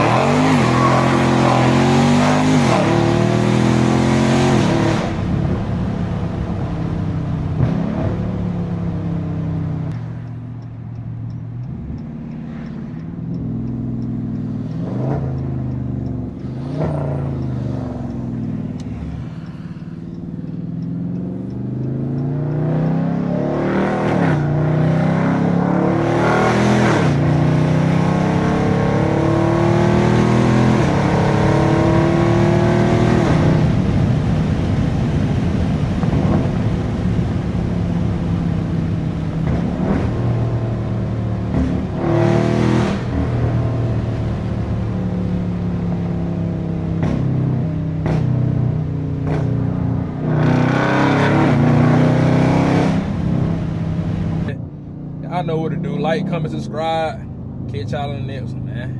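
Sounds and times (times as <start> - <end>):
car engine accelerating: 0.0 - 58.9
gear changes: 4.6 - 27.4.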